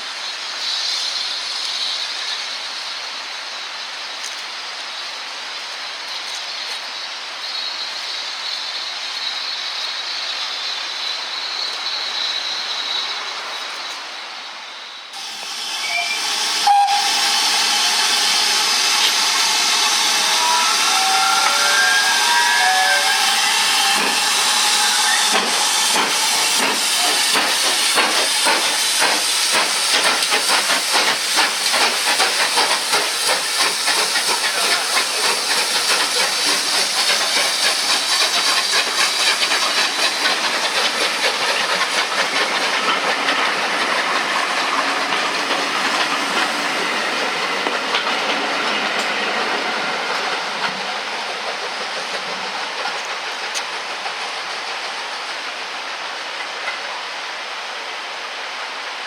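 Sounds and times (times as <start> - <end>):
steam hissing: 0.0 - 59.0
steam locomotive exhaust chuffs: 15.2 - 57.6.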